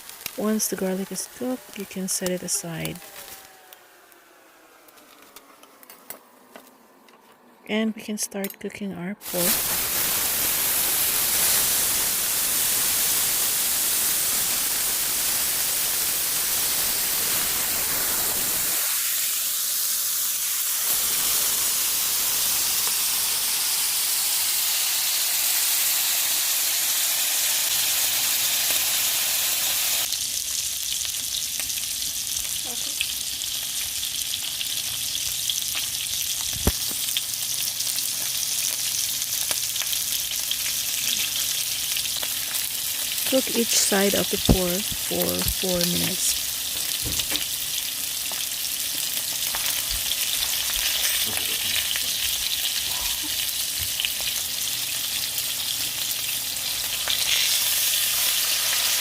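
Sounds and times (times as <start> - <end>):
pork sizzling in a frying pan: 0.0 - 4.0, 9.2 - 59.0.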